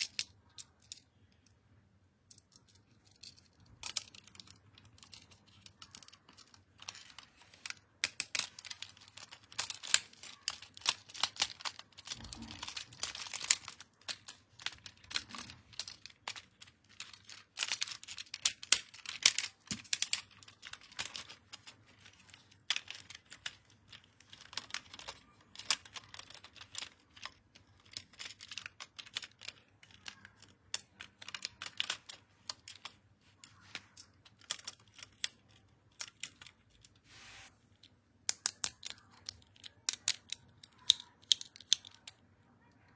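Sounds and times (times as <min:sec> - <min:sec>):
plastic toy parts clicking: 0:00.0 - 0:01.6, 0:02.2 - 0:37.0, 0:37.7 - 0:42.9
plastic packaging crinkling: 0:08.4 - 0:19.3.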